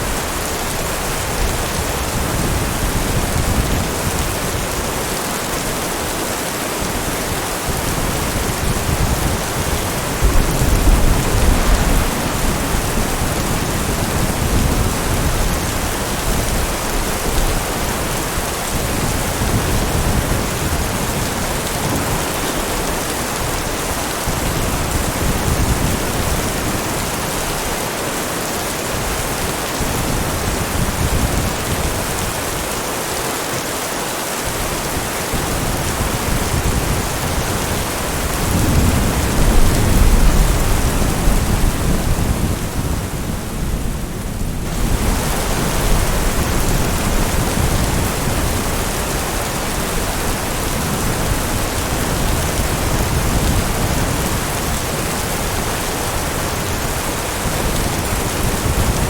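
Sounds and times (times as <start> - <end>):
heavy rain falling: 0.0 - 59.0
low rumble of thunder: 6.9 - 27.4, 35.3 - 59.0.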